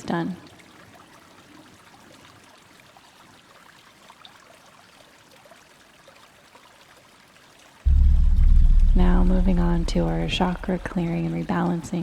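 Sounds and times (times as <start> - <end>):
trickle of running water: 0.0 - 9.0.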